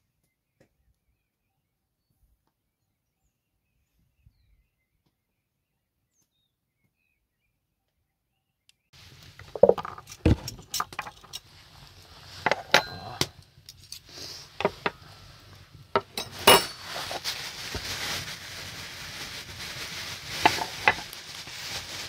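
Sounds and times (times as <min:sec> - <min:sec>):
dishes and cutlery clinking: 0:12.5 - 0:13.3, 0:16.0 - 0:17.2.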